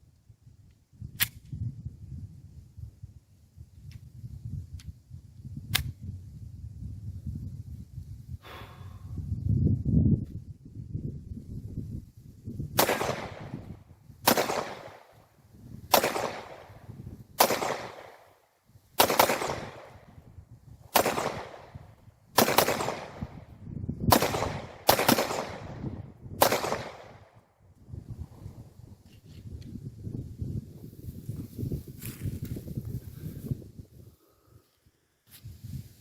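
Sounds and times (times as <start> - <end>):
pistol shots echoing: 14.3 - 15.1, 15.9 - 16.7, 17.4 - 18.2, 19.0 - 19.9, 21.0 - 21.7, 22.4 - 23.2, 24.1 - 25.7, 26.4 - 27.2.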